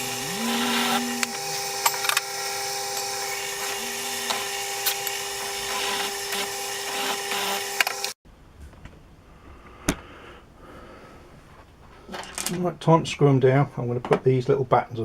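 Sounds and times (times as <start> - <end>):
electric motor humming: 0.0 - 8.2.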